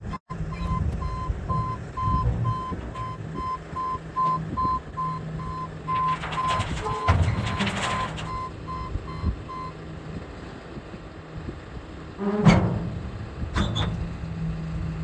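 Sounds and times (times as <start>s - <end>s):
diesel engine running: 0.0s - 15.0s
backup alarm beeping: 0.1s - 9.8s
rushing scraping noise: 5.5s - 8.7s.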